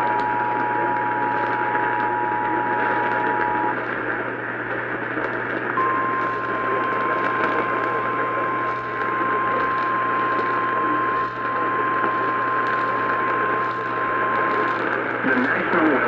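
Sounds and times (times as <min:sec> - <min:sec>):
radio reception hiss and hum: 0:00.0 - 0:16.0
steady high alert tone: 0:05.8 - 0:13.0.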